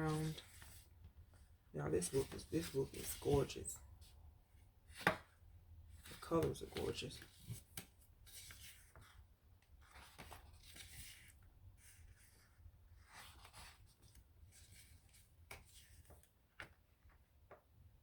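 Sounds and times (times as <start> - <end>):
paper rustling: 2.0 - 4.2, 6.0 - 17.6
pages turning with soft ticks: 5.9 - 17.9.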